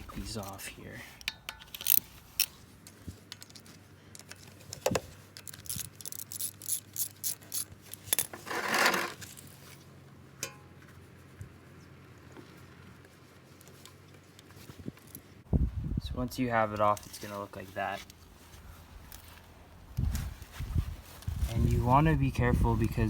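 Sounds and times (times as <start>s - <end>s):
scraping rattle: 0.0s - 9.6s
socket wrench clicking: 1.2s - 2.6s, 4.2s - 8.3s
light metallic clinks: 10.4s - 10.8s.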